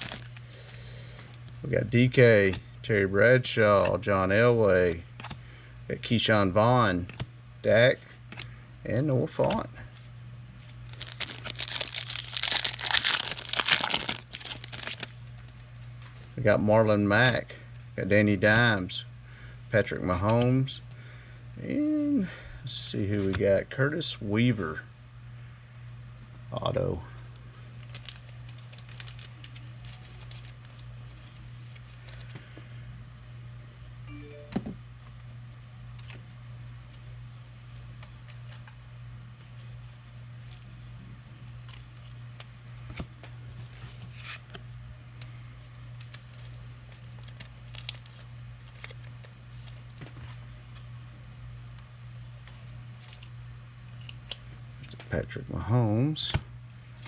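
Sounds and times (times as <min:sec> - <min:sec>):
trading cards and packaging rustling: 0:00.0 - 0:01.3, 0:10.6 - 0:16.3, 0:27.7 - 0:32.4, 0:45.2 - 0:51.1
steady low hum: 0:00.0 - 0:57.0.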